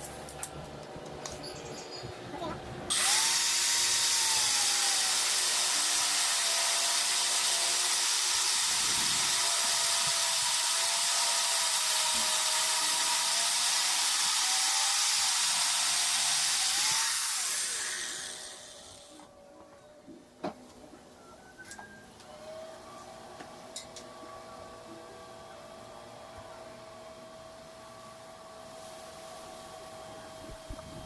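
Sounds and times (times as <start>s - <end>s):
angle grinder grinding metal: 2.9s - 19.2s.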